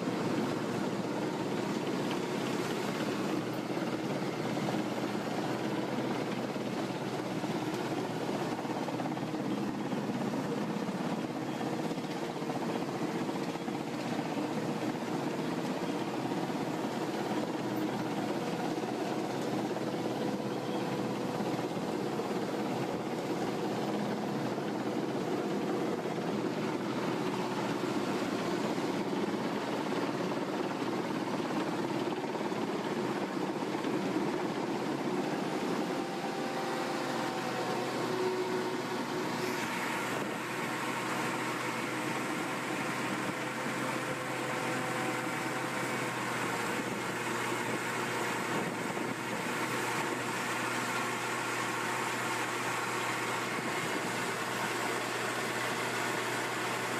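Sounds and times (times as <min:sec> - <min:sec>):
machine humming steadily: 0:00.0 - 0:56.9.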